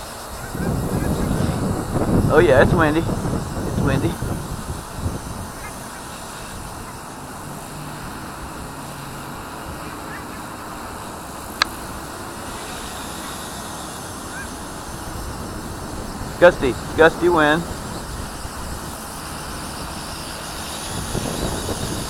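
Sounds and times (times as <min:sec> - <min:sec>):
gusty wind on microphone: 0:00.0 - 0:22.0
goose honks: 0:09.7 - 0:10.6.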